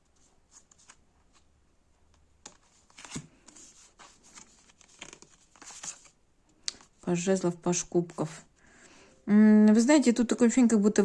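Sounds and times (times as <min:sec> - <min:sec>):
cards rustling and clicking: 0:00.0 - 0:01.5, 0:02.1 - 0:07.1.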